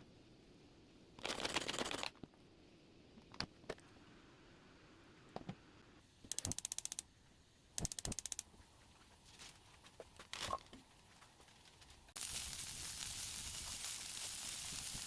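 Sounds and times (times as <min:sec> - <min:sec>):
rapid ratcheting clicks: 0:06.3 - 0:07.1, 0:07.8 - 0:08.5
food sizzling in a hot pan: 0:12.2 - 0:15.0.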